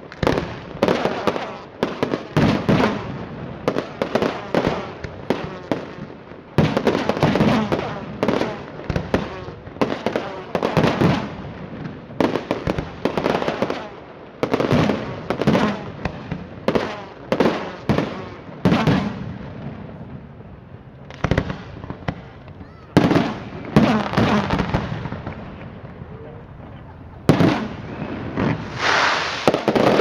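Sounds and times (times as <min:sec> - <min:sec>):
firework crackle: 0:00.0 - 0:30.0
firework shells bursting: 0:27.0 - 0:30.0.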